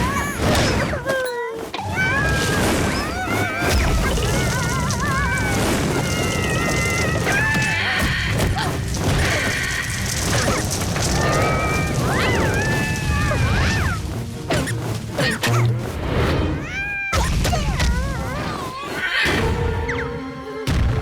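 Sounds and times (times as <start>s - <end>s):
squeaky character noises: 0.0s - 20.4s
background music: 1.6s - 21.0s.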